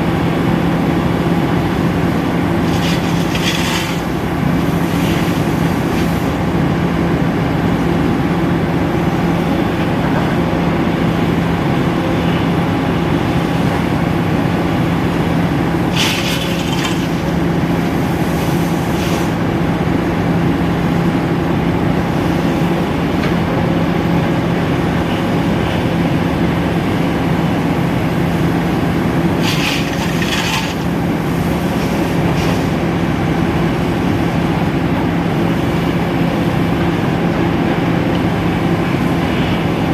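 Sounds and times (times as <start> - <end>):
excavator diesel engine: 0.0 - 39.9
hissing scraping noise: 2.6 - 4.2, 29.4 - 30.9.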